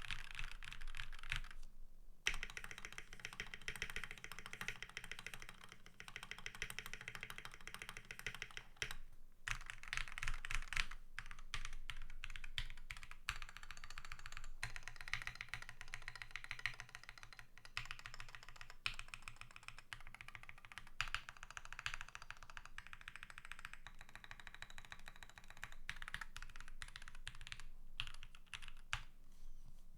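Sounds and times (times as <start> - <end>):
fast typing on mechanical keyboard: 0.0 - 1.6, 2.3 - 29.1.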